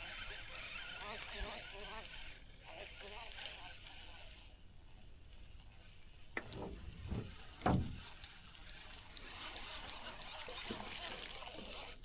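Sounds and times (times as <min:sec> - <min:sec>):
dull knocks: 0:06.4 - 0:08.2
heavy thump: 0:06.4 - 0:08.2.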